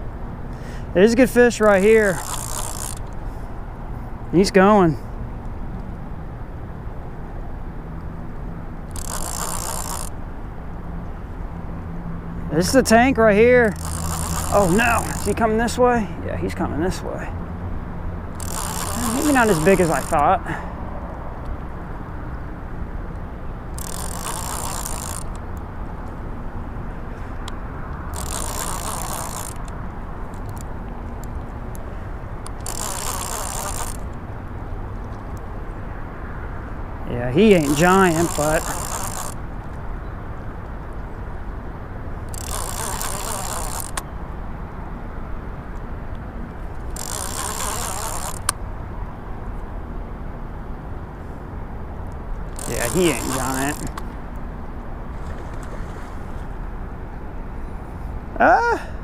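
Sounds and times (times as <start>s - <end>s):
fishing reel whirring: 0.6s - 3.4s, 8.8s - 10.2s, 12.6s - 15.8s, 18.3s - 20.6s, 23.7s - 25.6s, 27.4s - 31.8s, 32.4s - 34.2s, 37.3s - 39.4s, 42.2s - 44.1s, 46.6s - 48.6s, 52.4s - 54.2s.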